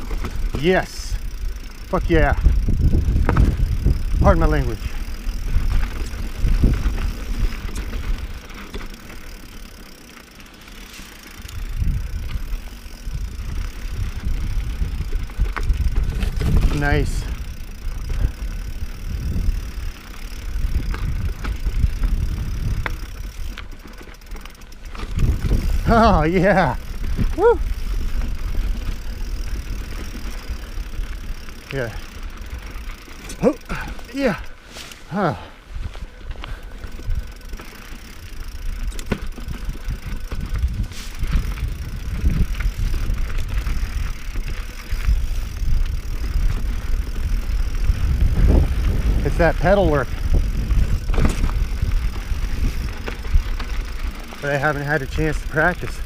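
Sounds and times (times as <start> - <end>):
wheels knocking on rocks: 0.0 - 34.4, 35.8 - 56.0
bike rattling: 0.0 - 56.0
bike tyres rumbling on rocks: 0.0 - 56.0.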